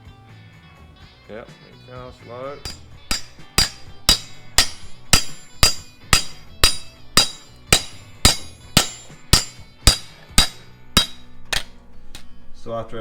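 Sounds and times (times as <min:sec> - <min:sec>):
ringing metallic strikes: 0:02.6 - 0:11.7.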